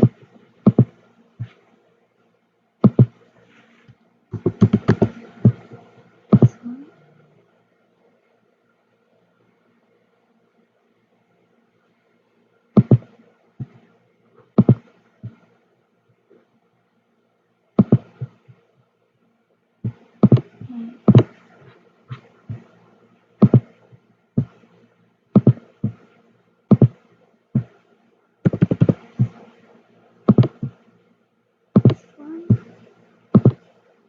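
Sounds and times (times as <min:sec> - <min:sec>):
computer mouse clicks: 0:28.4 - 0:29.4, 0:30.3 - 0:30.8.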